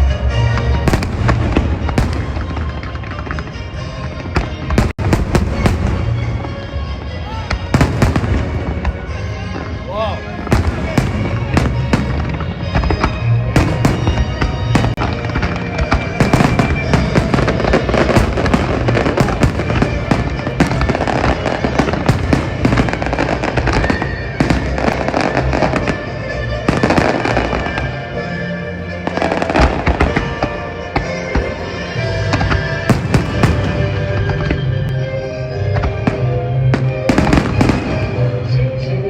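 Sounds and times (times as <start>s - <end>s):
fireworks bursting and crackling: 0.0s - 39.0s
loud music: 0.0s - 39.0s.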